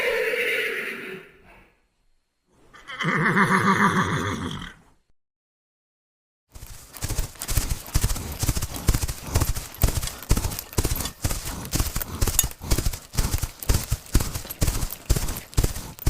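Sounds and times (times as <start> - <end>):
horse hooves clip-clopping: 6.5 - 16.0.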